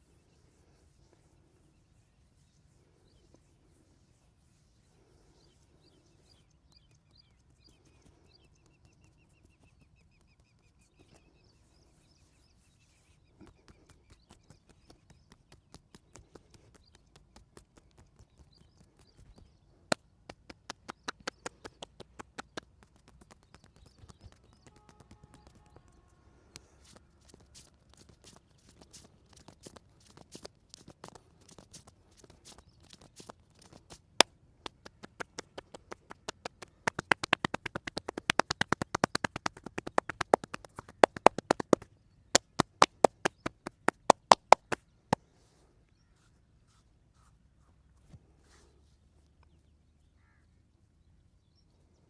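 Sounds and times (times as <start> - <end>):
faint birds chirping: 0.0 - 52.0
massage taps and slaps: 13.4 - 26.0, 26.6 - 44.8.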